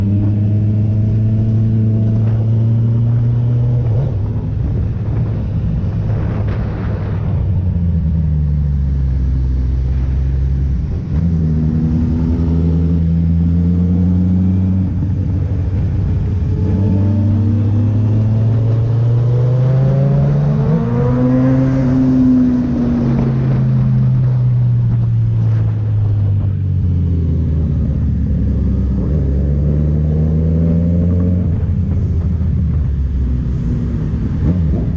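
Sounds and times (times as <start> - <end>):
motorcycle engine revving: 0.0 - 34.9.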